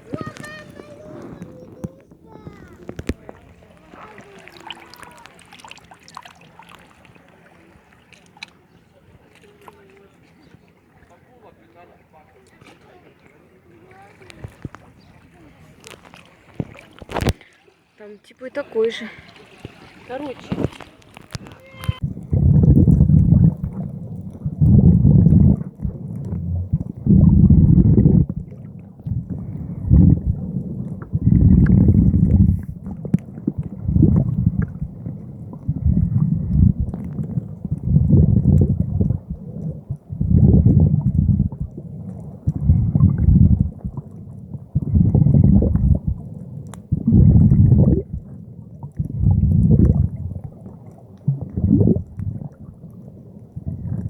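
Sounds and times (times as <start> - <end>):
breathing through a snorkel: 44.8 - 45.8.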